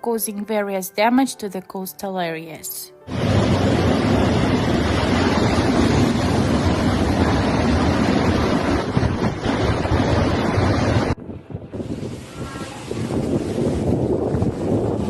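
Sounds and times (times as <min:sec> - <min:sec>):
storm waves surging on shore: 0:03.1 - 0:15.0
wind buffeting microphone: 0:03.1 - 0:15.0.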